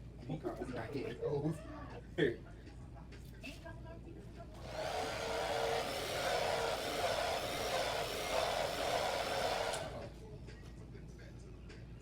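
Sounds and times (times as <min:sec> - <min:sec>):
hair dryer running: 0:04.6 - 0:10.1.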